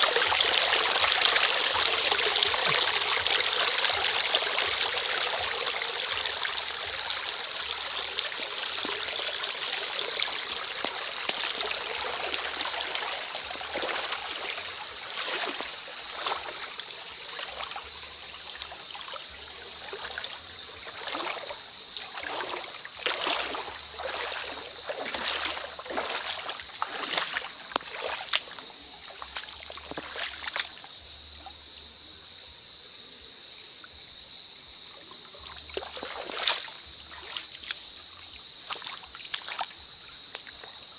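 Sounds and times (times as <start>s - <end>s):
footsteps splashing through water: 0.0s - 4.8s, 10.0s - 31.0s, 35.3s - 40.9s
creek trickling over stones: 0.0s - 31.6s, 34.9s - 40.9s.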